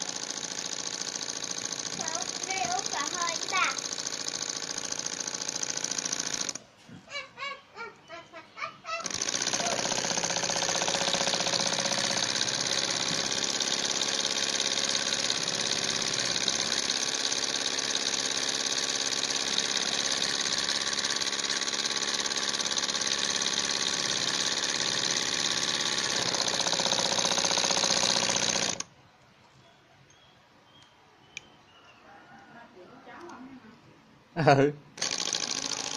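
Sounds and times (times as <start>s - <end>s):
model engine mechanical clatter: 0.0s - 6.6s, 9.0s - 28.9s, 35.0s - 35.9s.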